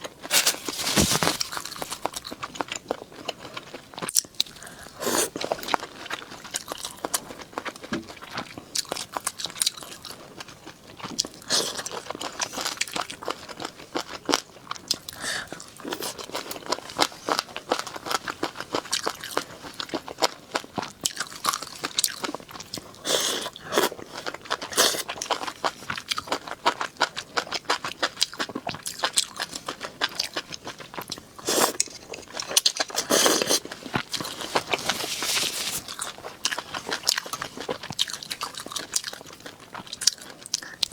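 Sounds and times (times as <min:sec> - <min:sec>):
chewing and crunching food: 0:00.0 - 0:40.9.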